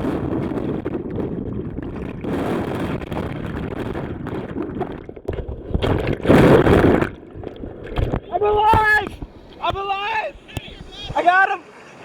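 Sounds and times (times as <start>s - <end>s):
river rapids rushing: 8.4s - 12.0s.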